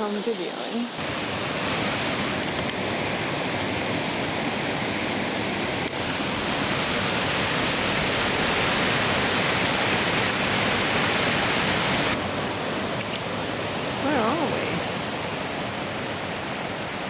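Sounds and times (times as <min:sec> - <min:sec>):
stream rushing over rocks: 0:00.9 - 0:17.0.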